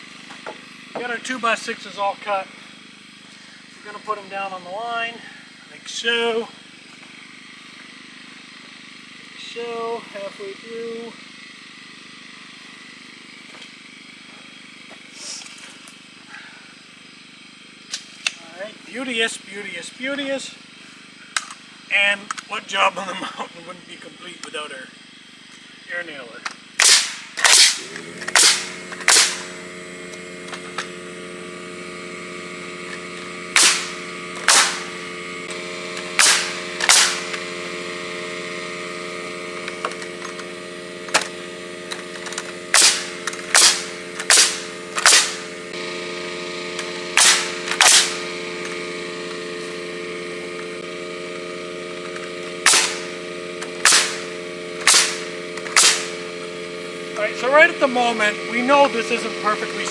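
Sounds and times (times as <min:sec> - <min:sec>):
steady mechanical hum: 0:00.0 - 0:59.9
air nailer firing nails into wood: 0:26.5 - 0:59.9.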